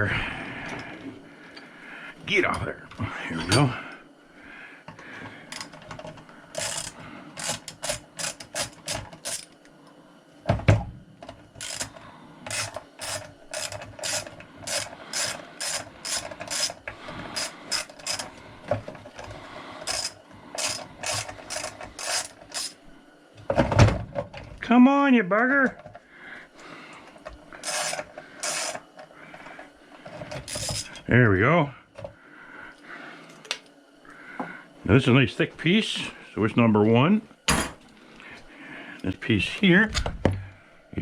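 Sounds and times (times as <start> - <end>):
ratchet wrench clicking: 5.5 - 5.7, 6.5 - 9.6, 11.6 - 18.3, 19.8 - 22.8, 27.6 - 28.8, 30.4 - 31.0.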